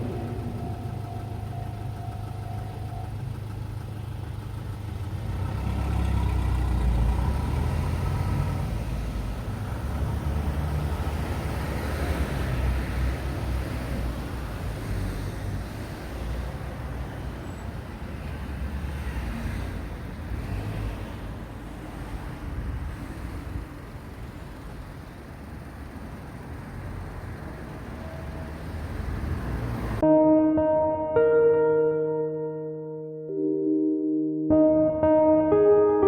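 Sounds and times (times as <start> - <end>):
traffic passing: 0.0 - 30.2.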